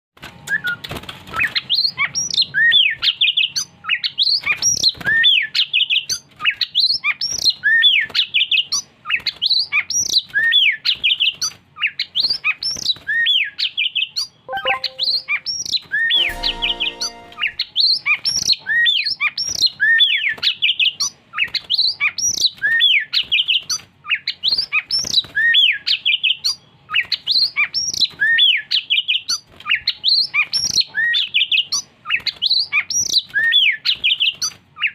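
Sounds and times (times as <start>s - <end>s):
bird singing whistled song: 9.7s - 29.2s.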